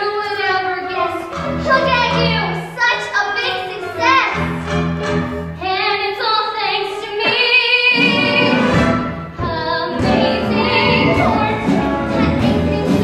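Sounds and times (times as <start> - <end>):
instrumental accompaniment: 0.0 - 6.0, 7.1 - 13.0
voices singing together: 6.9 - 13.0.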